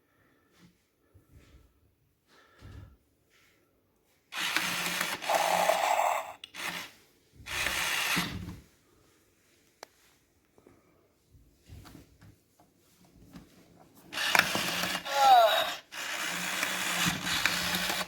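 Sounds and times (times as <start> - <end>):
toy making noisy sounds: 5.2 - 6.4, 14.2 - 16.6.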